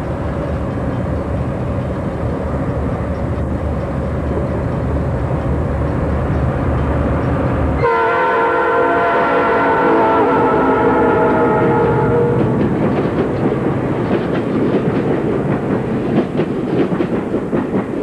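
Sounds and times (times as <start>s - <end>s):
train rumbling across bridge: 0.0s - 18.0s.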